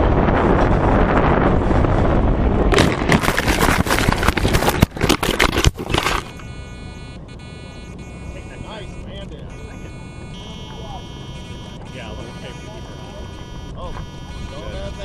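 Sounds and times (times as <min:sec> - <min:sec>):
wind rushing over microphone: 0:00.0 - 0:05.8
crackling scraping knocks: 0:00.4 - 0:06.5
faint steady hum: 0:02.8 - 0:15.0.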